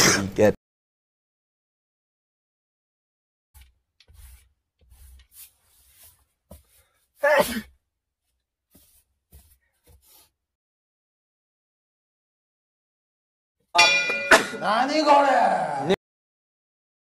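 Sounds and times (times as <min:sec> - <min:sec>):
person sneezing: 0:07.2 - 0:07.8.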